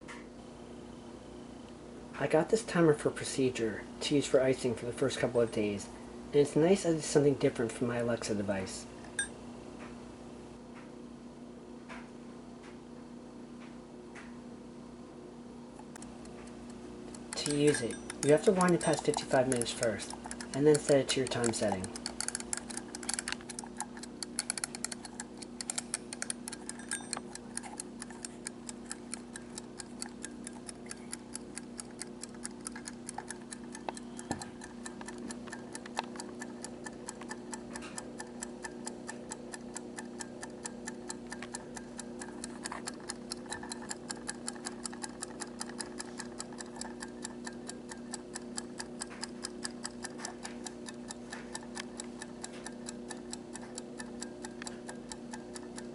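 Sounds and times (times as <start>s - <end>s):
kitchen timer ticking: 16.0s - 55.9s.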